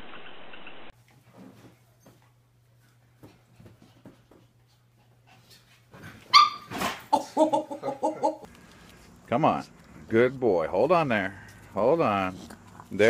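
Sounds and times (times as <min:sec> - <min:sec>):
dog yelping and whining: 0:06.2 - 0:07.0.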